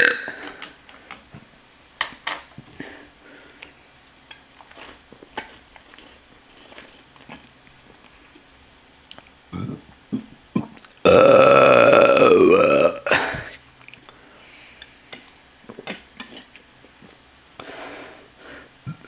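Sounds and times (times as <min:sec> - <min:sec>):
long loud burp: 0:00.0 - 0:00.5, 0:11.1 - 0:13.5.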